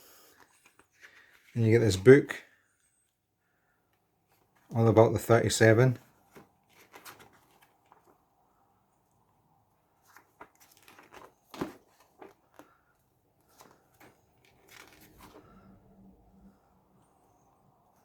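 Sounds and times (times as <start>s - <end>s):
paper rustling: 0.3s - 1.6s, 4.3s - 8.6s, 9.2s - 16.3s.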